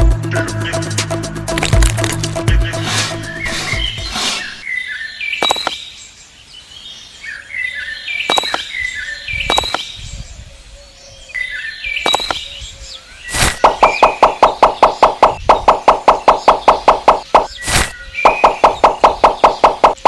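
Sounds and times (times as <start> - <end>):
small birds chirping: 2.5 - 20.0
sharp clicks or knocks: 5.4 - 5.8, 8.3 - 8.7, 9.5 - 9.9, 12.1 - 12.4.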